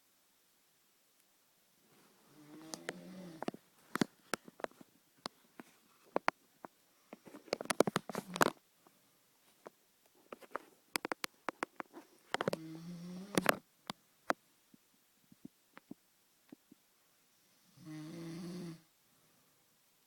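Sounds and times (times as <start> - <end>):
person snoring: 2.3 - 3.5, 12.5 - 13.5, 17.6 - 18.9
sharp crackling clicks: 2.6 - 5.4, 10.4 - 12.6.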